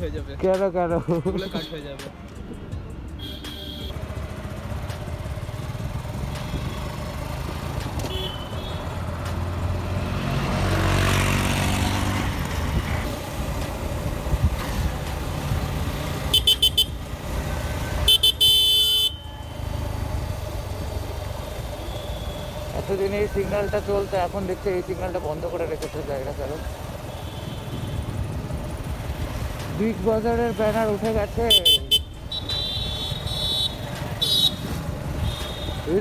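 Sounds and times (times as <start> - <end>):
road noise: 0.0 - 36.0
motorcycle running: 3.2 - 36.0
vehicle passing loudly: 8.8 - 18.8
horn toots and blast: 16.3 - 17.0, 17.8 - 19.4.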